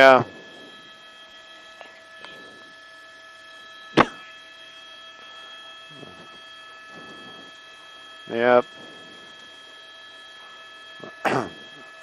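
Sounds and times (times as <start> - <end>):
electrical hum with high whine: 0.0 - 12.0.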